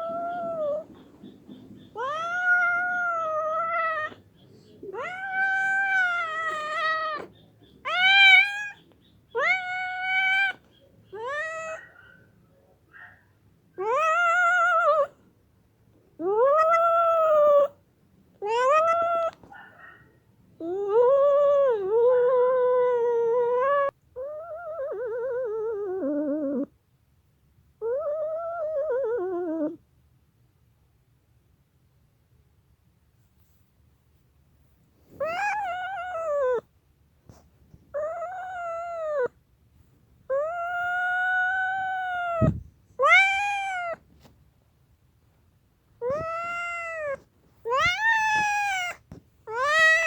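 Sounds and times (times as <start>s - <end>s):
angry cat yowling: 1.9s - 4.2s, 4.9s - 8.8s, 9.4s - 10.6s, 11.2s - 12.2s, 13.8s - 15.1s, 16.2s - 17.7s, 18.4s - 20.0s, 35.2s - 36.6s, 38.0s - 39.3s, 40.3s - 44.0s, 46.0s - 50.0s.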